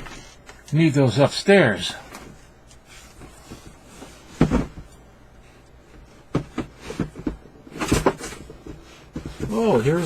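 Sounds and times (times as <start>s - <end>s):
box thump: 4.3s - 4.9s.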